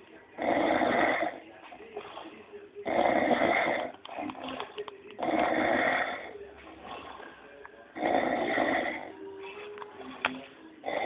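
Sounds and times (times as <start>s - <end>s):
quiet breathing: 0.0s - 11.0s
man snoring loudly: 0.4s - 1.4s, 2.8s - 3.9s, 5.2s - 6.3s, 8.0s - 9.1s.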